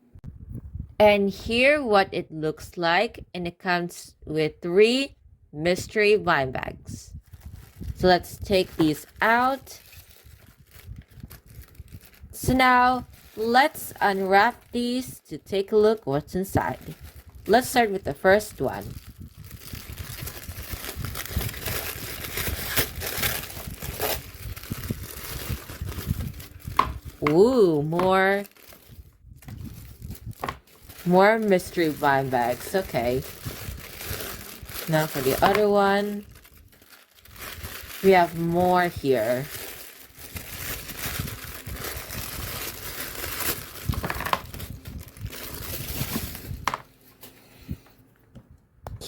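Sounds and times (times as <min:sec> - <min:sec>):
plastic wrapper crinkling: 0:07.2 - 0:15.0, 0:16.6 - 0:47.4
sharp plastic crackles: 0:18.8 - 0:47.3.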